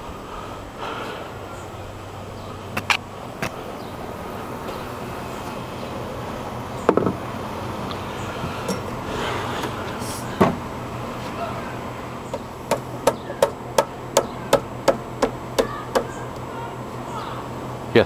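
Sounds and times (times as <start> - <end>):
hammer striking wood: 12.3 - 16.2.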